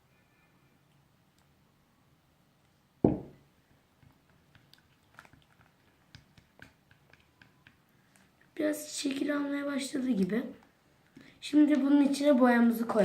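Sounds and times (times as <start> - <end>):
single thump: 3.0 - 3.4
slime squelching and clicking: 4.0 - 10.4.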